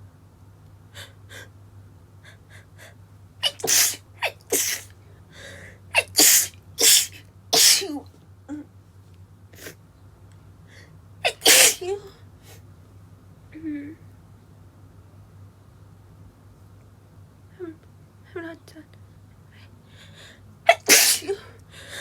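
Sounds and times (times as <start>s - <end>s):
woman sneezing: 3.4s - 4.9s, 6.0s - 8.0s, 11.3s - 12.0s, 20.7s - 21.4s.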